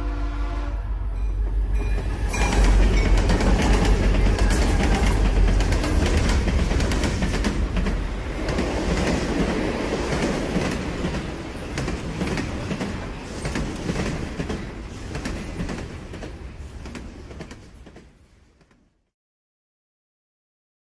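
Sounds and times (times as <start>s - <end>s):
rumbling and clattering with clicks: 2.4s - 9.5s.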